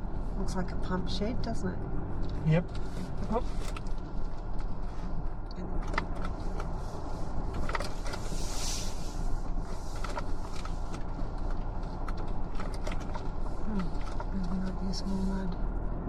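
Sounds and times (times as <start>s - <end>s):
engine and tyre rumble: 0.0s - 16.0s
vehicle knocks and rattles: 1.8s - 8.6s, 9.2s - 16.0s
brief hiss: 8.3s - 9.2s.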